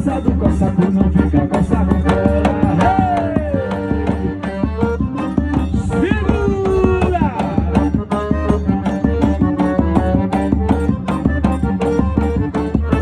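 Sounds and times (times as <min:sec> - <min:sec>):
band playing with drum beat: 0:00.0 - 0:13.0.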